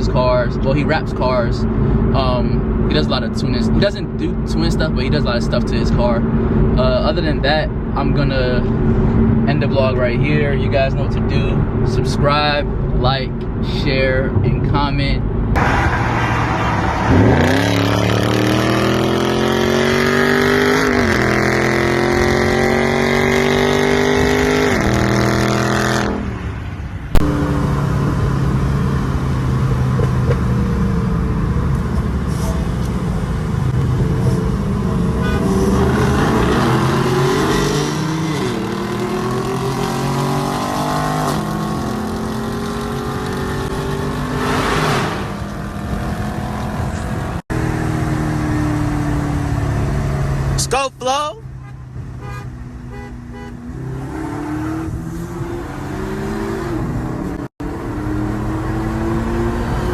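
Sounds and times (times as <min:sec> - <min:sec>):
car engine accelerating through gears: 0:15.5 - 0:26.3, 0:27.1 - 0:50.6, 0:53.6 - 0:59.9.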